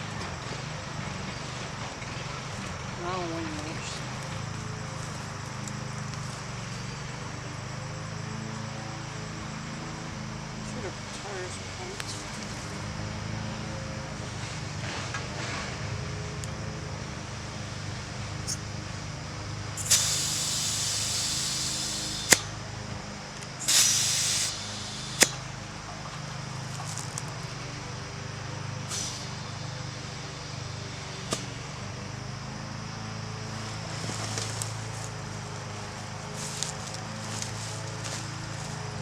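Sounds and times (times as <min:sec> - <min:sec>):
steady low hum: 0:00.0 - 0:39.0
compressed air hissing: 0:17.5 - 0:27.0, 0:28.8 - 0:31.8
sharp click: 0:19.8 - 0:22.6, 0:23.6 - 0:25.5.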